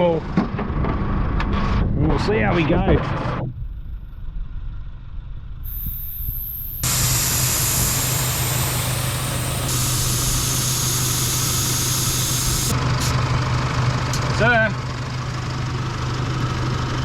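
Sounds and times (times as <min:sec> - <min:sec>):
engine idling: 0:04.9 - 0:17.0
air hissing from tyre valve: 0:05.7 - 0:13.2.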